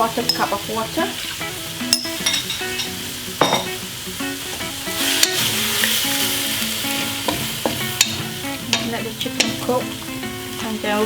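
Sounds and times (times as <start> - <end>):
chicken sizzling in a wok: 0.0 - 11.0
spatula stirring and knocking wok: 4.4 - 10.0.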